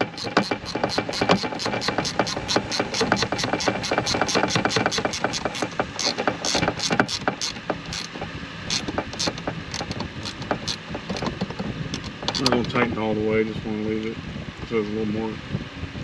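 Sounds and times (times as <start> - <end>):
hand ratchet clicking: 0.0 - 12.8.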